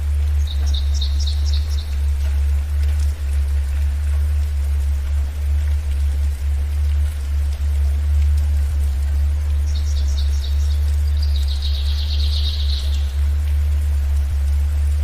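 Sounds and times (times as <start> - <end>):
faint rain hiss: 0.0 - 15.0
steady low hum: 0.0 - 15.0
songbird chirping and trilling: 0.4 - 2.0, 9.7 - 13.2.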